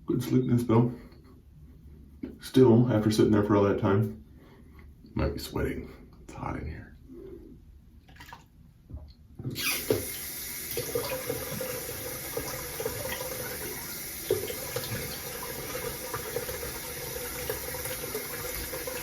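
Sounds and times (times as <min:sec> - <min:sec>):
water tap running into sink: 0:09.6 - 0:19.0.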